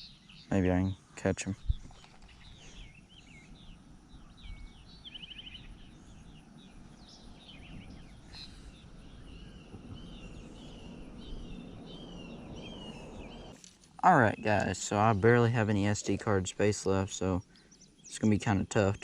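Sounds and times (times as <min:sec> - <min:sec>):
songbirds chirping and warbling: 0:00.0 - 0:19.0
bird trill: 0:01.6 - 0:13.6
low steady rumble: 0:02.4 - 0:17.4.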